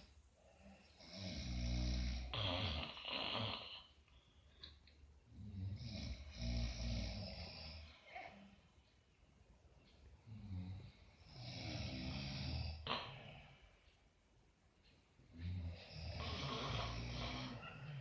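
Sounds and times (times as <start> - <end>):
quiet breathing: 0.0 - 18.0
person snoring: 0.6 - 4.0, 5.3 - 8.0, 10.3 - 13.6, 15.3 - 18.0.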